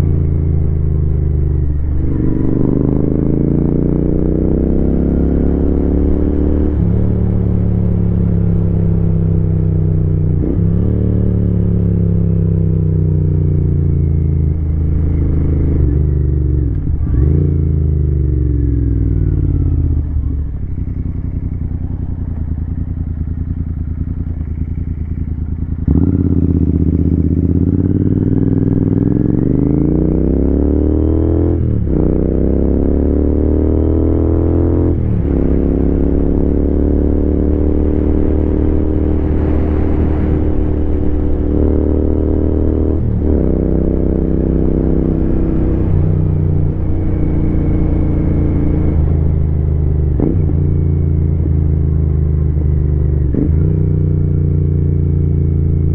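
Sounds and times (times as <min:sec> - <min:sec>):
motorcycle engine accelerating: 0:00.0 - 0:55.9.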